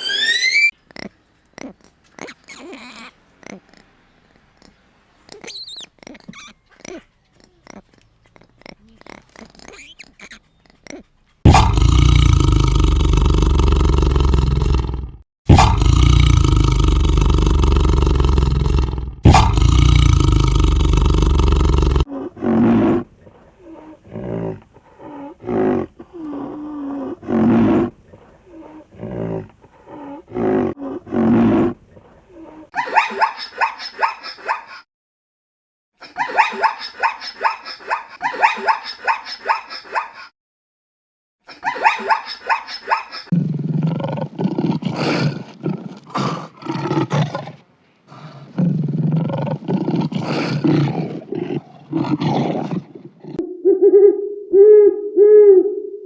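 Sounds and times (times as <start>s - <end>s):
rapid high chattering calls: 5.3s - 7.0s, 7.8s - 10.8s
animal loud rough roar: 11.5s - 23.1s, 43.4s - 53.4s.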